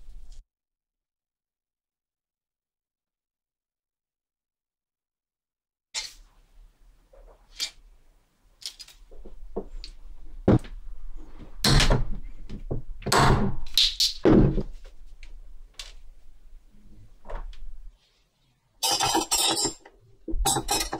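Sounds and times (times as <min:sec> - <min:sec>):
faint electrical hum: 0:00.0 - 0:00.4, 0:06.0 - 0:20.9.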